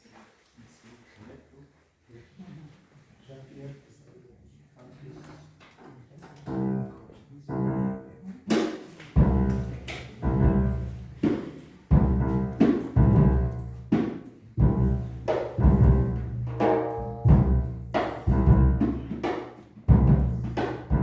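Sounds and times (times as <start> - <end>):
piano chords: 6.5 - 8.2, 9.2 - 14.0, 14.6 - 21.0
drum hits: 8.5 - 21.0
upright bass notes: 9.2 - 11.2, 11.9 - 13.7, 14.6 - 19.0, 19.9 - 21.0.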